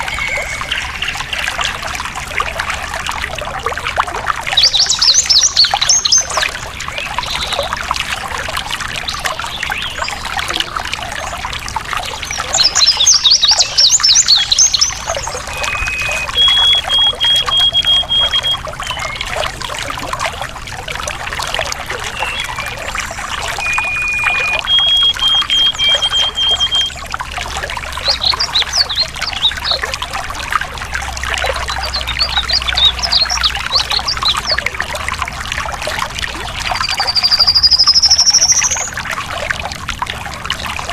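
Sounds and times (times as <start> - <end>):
stream water trickling: 0.0 - 40.9
songbirds chirping: 4.5 - 8.0, 9.0 - 19.6, 21.8 - 35.1
bird call with even notes: 12.8 - 19.3, 22.1 - 27.1.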